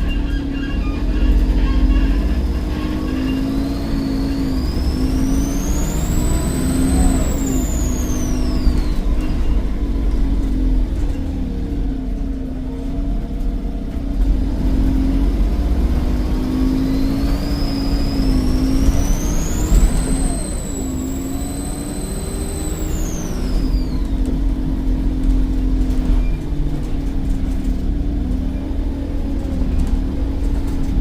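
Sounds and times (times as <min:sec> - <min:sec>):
turbocharger whistle: 0:00.0 - 0:09.8, 0:16.0 - 0:24.5
bus engine drone: 0:00.0 - 0:31.0.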